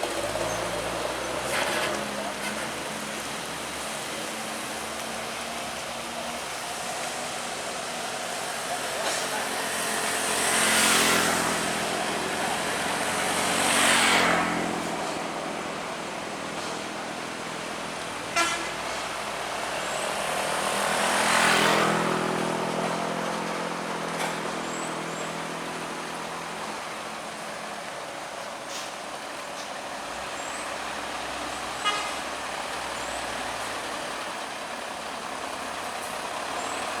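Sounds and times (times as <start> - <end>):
vehicles passing: 0.0 - 37.0
car horn toot: 18.3 - 18.8, 31.8 - 32.2.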